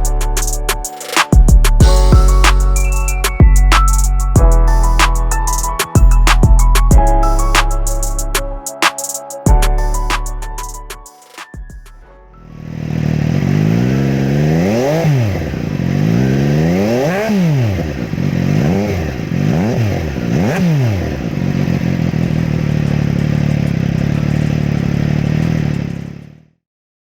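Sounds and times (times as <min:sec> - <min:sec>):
motorcycle engine idling and revving: 0:12.4 - 0:26.6.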